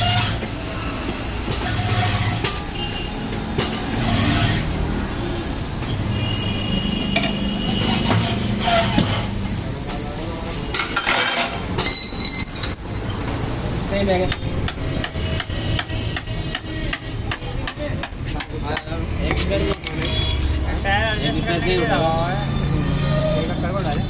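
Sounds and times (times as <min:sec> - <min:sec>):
metal tools clinking: 0:10.8 - 0:13.1, 0:19.6 - 0:20.2.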